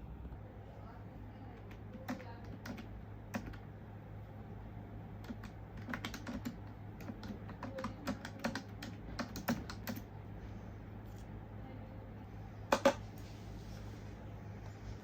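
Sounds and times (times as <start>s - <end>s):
typing on a keyboard: 1.5s - 3.6s, 5.2s - 10.1s.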